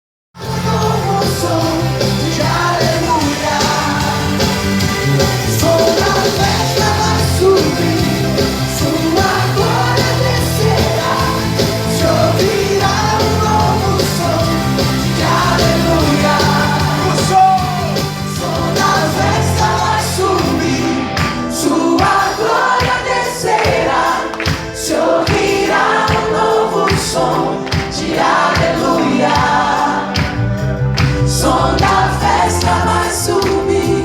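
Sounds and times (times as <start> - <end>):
steady bass line: 0.4 - 22.2, 28.6 - 34.0
loud music with singing: 0.4 - 34.0.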